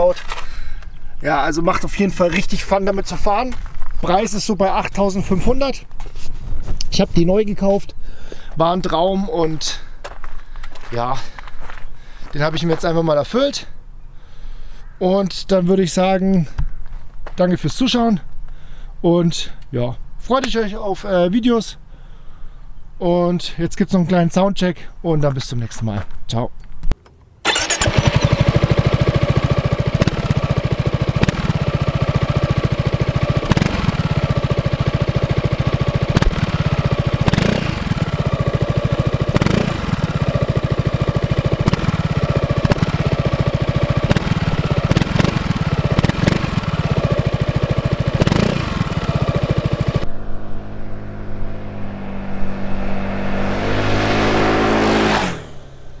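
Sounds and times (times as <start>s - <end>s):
scooter engine revving: 27.4s - 56.0s.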